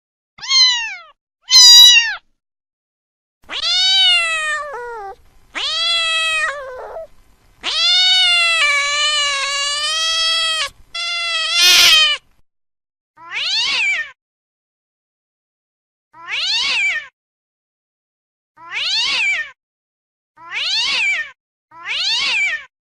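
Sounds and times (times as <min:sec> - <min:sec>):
cat meowing: 0:00.4 - 0:02.2, 0:03.5 - 0:12.2, 0:13.2 - 0:14.2, 0:16.2 - 0:17.1, 0:18.6 - 0:19.6, 0:20.4 - 0:22.7.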